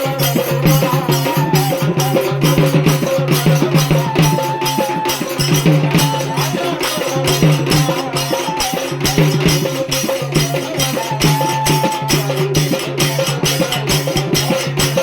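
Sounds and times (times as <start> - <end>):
hand percussion: 0.0 - 15.0
held melody line: 0.0 - 15.0.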